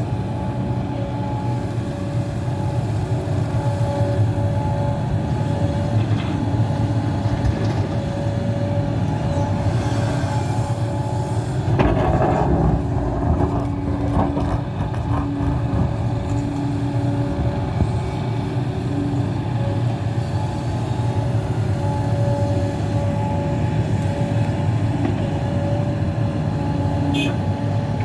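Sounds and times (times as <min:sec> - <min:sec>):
excavator diesel engine hum: 0:00.0 - 0:28.0
hydraulic whine: 0:09.6 - 0:18.3.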